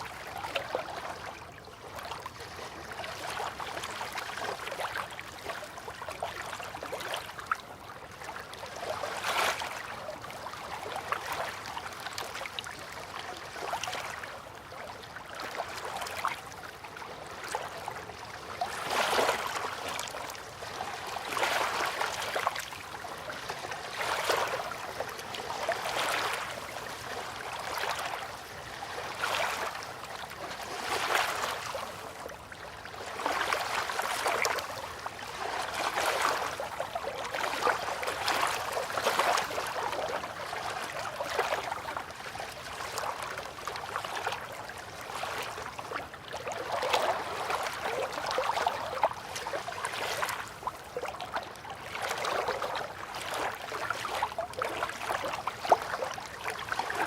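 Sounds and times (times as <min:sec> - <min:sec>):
river water lapping: 0:00.0 - 0:57.0.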